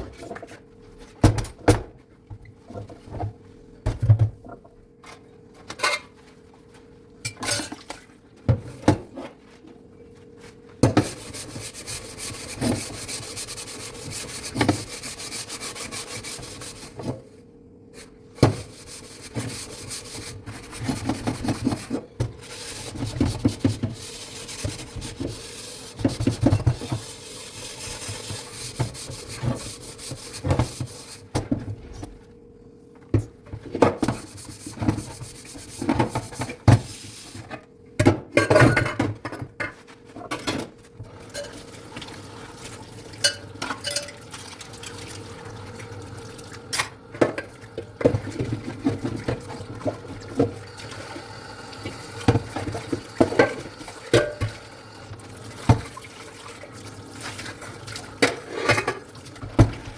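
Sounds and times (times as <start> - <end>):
dishes being scrubbed: 10.8 - 17.1, 18.0 - 31.4, 33.9 - 37.5, 41.2 - 45.8, 46.4 - 51.1, 51.8 - 54.6, 55.4 - 59.5.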